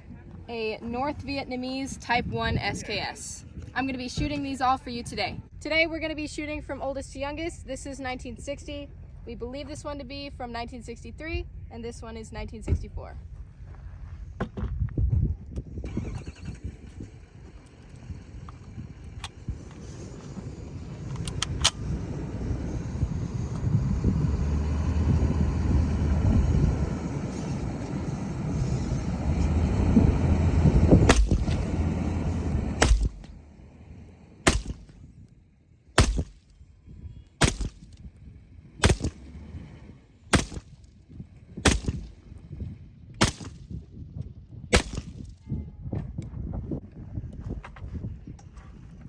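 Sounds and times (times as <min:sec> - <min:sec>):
loud rumbling noise: 0:20.3 - 0:35.0
rifle shots: 0:31.1 - 0:31.7, 0:32.8 - 0:33.4, 0:34.4 - 0:34.9, 0:36.0 - 0:36.4, 0:37.4 - 0:37.9, 0:38.8 - 0:39.2, 0:40.3 - 0:40.8, 0:41.6 - 0:42.1, 0:43.2 - 0:43.6, 0:44.7 - 0:45.2.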